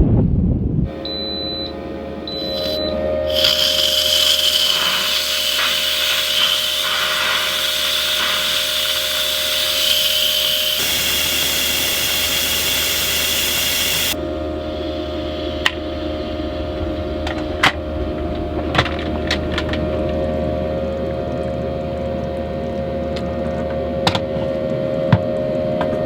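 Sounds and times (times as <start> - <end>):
pressure cooker steam hissing: 2.4 - 14.2.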